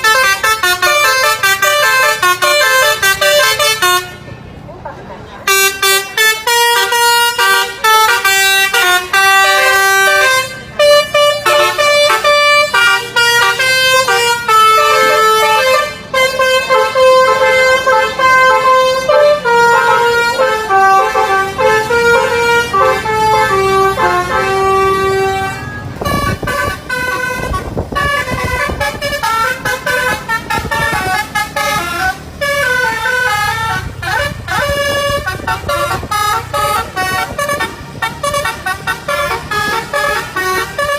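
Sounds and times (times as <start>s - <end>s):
multi-tone musical bus horn: 0.0s - 4.7s, 5.4s - 40.9s
broad rumble: 8.4s - 40.9s.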